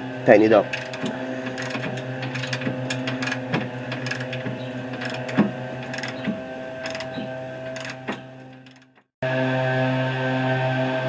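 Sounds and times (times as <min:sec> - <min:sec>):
hand ratchet clicking: 0:00.7 - 0:09.0.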